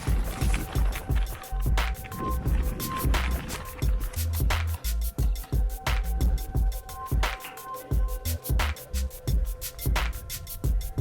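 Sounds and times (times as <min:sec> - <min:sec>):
electronic music with heavy beat: 0:00.0 - 0:11.0.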